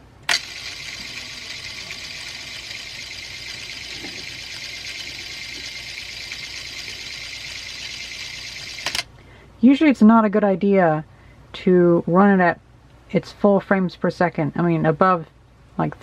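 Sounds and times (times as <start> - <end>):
film camera clockwork whir: 0.2 - 9.1.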